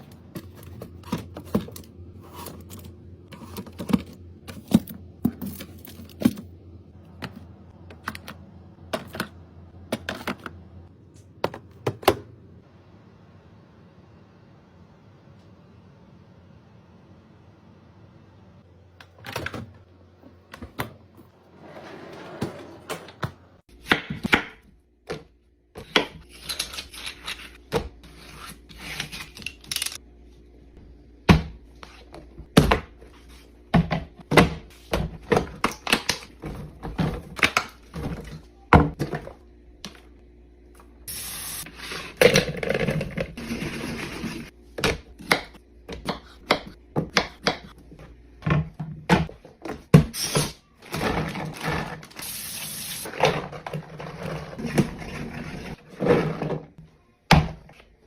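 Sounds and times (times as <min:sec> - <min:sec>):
items knocking and clicking: 0:00.0 - 0:10.6, 0:11.2 - 0:12.3, 0:33.7 - 0:40.1.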